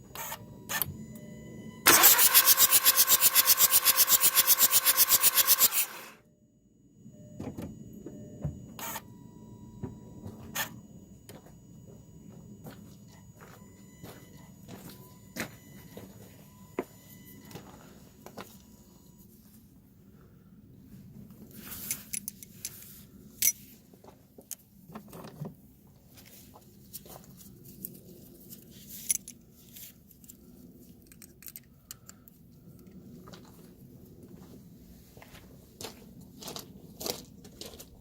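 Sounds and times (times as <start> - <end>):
faint steady tone: 0.0 - 1.9, 2.8 - 24.6.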